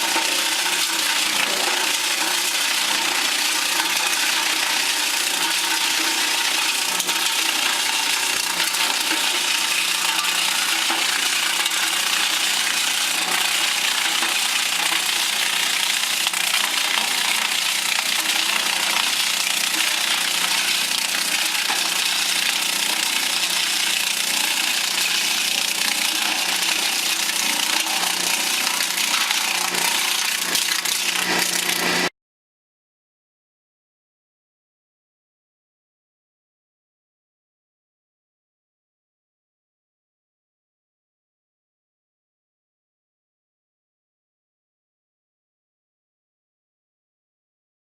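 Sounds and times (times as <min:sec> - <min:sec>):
lathe tool shaving wood: 0:00.0 - 0:32.1
machine hum: 0:00.0 - 0:32.1.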